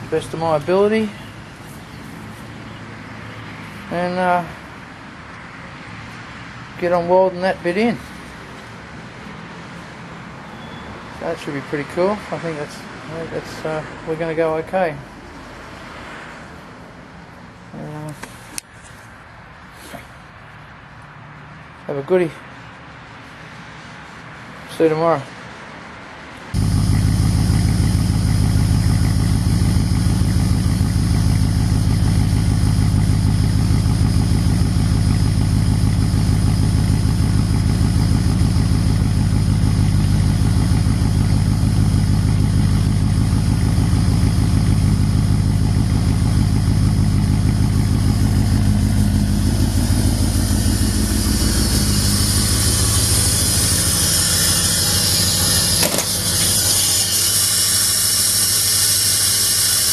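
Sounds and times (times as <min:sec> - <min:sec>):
engine humming: 0:00.0 - 0:02.4, 0:26.6 - 0:59.9
hiss: 0:50.2 - 0:59.9.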